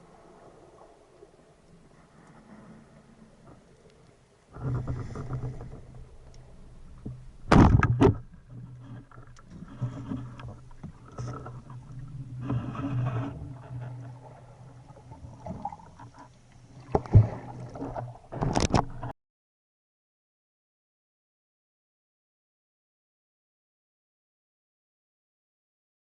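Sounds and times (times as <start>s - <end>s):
water sloshing and splashing: 0.0s - 19.1s.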